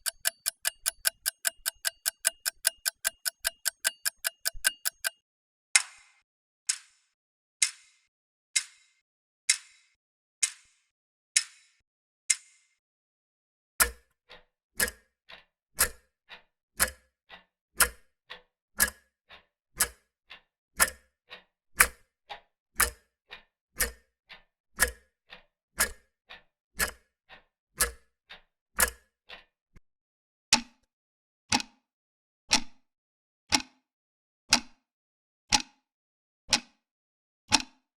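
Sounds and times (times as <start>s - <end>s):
heavy clock tick-tock: 0.0s - 5.2s, 14.8s - 15.0s, 16.8s - 17.0s, 20.8s - 21.0s, 26.8s - 27.0s
thin bright clock tick: 0.0s - 5.2s, 13.8s - 14.0s, 14.8s - 15.0s, 15.8s - 16.0s, 16.8s - 17.0s, 17.8s - 18.0s, 18.8s - 19.0s, 19.8s - 20.0s, 20.8s - 21.0s, 23.8s - 24.0s, 24.8s - 25.0s, 26.8s - 27.0s, 27.8s - 28.0s, 28.8s - 29.0s, 33.5s - 33.7s, 37.5s - 37.7s.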